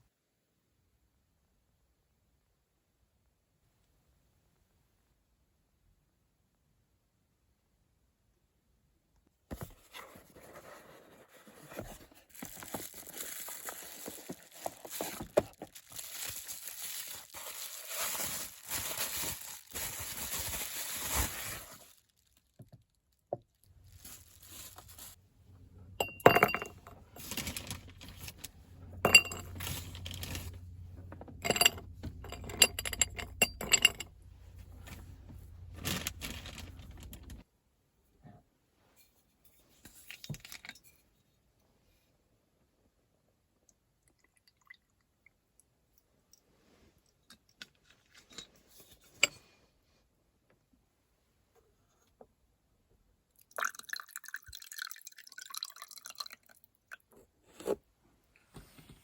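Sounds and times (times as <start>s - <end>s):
rustling with small clicks: 26.8s - 37.4s
dishes clinking: 29.0s - 29.6s.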